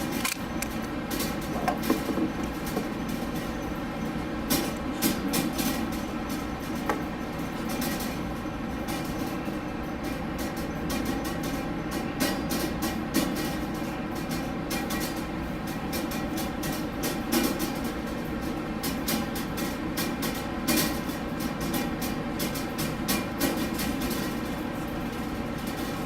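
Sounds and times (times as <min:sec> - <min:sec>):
ventilation drone: 0:00.0 - 0:26.0.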